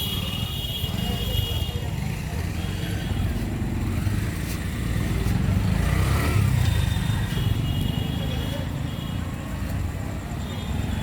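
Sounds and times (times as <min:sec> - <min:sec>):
street traffic rumble: 0:00.0 - 0:11.0
vehicle passing: 0:03.4 - 0:07.4.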